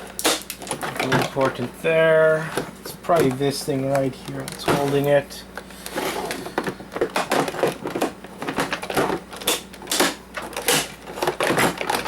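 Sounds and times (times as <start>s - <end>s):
plastic parts clicking and knocking: 0.1s - 1.6s, 5.8s - 12.0s.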